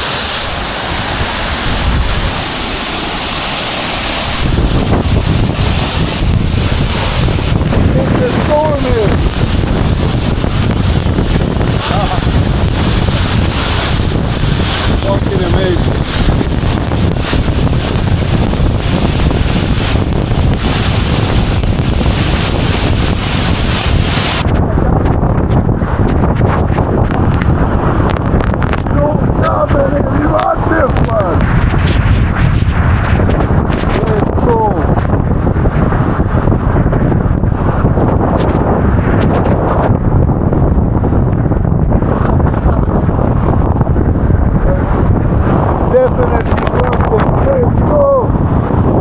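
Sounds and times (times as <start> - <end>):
waterfall rushing: 0.0 - 24.4
wind buffeting microphone: 0.0 - 49.0.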